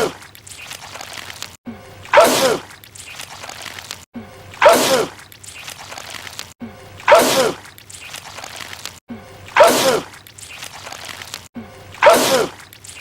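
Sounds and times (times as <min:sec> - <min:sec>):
man sneezing loudly: 0:09.6 - 0:10.1, 0:12.0 - 0:12.6.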